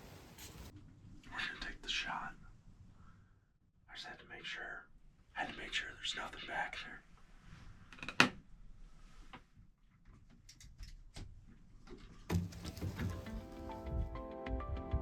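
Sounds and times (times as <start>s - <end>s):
handling noise of gear: 0.0s - 0.7s, 12.3s - 13.9s.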